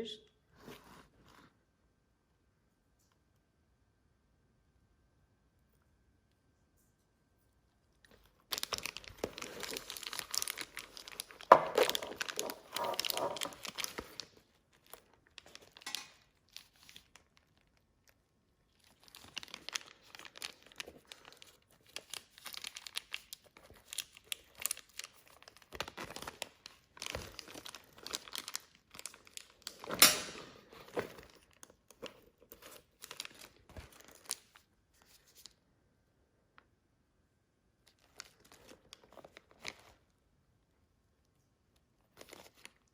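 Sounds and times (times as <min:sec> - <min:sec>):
wrapping crinkling: 0:07.7 - 0:35.6, 0:37.8 - 0:40.2, 0:41.8 - 0:42.9.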